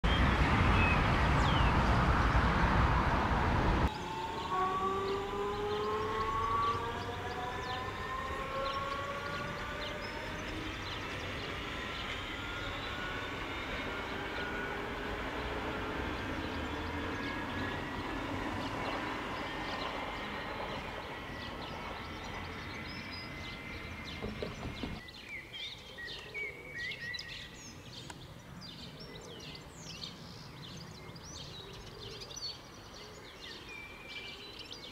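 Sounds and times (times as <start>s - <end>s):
electric train passing: 0.1s - 25.0s
traction motor whine: 2.6s - 25.0s.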